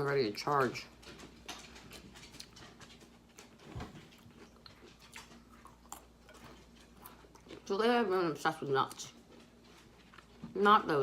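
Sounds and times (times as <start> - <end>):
person chewing: 1.6 - 7.8, 8.9 - 10.5.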